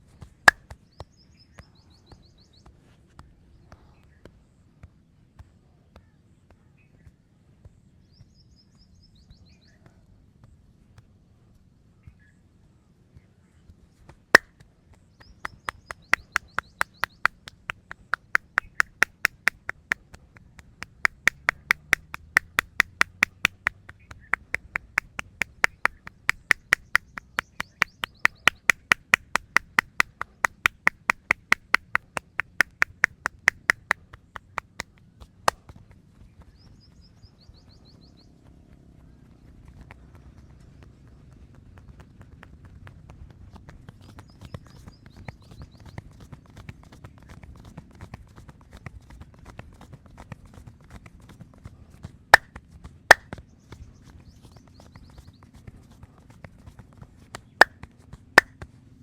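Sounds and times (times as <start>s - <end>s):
sharp hand claps: 0.5s - 0.8s, 15.2s - 35.6s, 52.4s - 53.4s, 57.3s - 58.7s.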